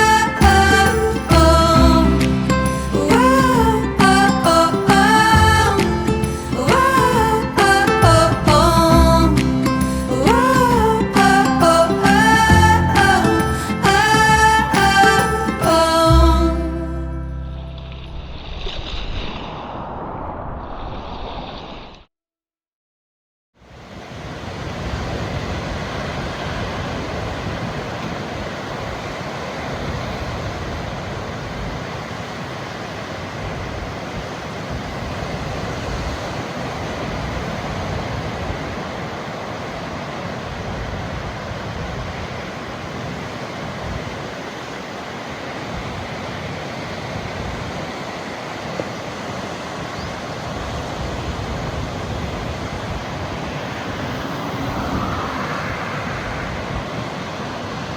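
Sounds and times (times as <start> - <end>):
ocean waves breaking: 0.0 - 16.5, 17.4 - 22.0, 23.7 - 57.9
wind rumble on microphone: 17.4 - 22.1, 23.7 - 44.8, 45.6 - 57.9.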